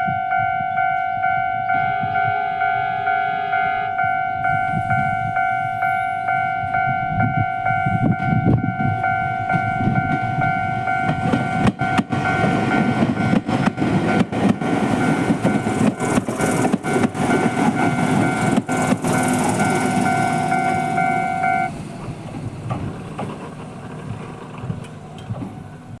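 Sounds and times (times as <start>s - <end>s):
level crossing warning bell: 0.0s - 21.8s
train rumble: 0.0s - 26.0s
train wheels clacking over rail joints: 9.5s - 21.1s, 21.8s - 25.8s.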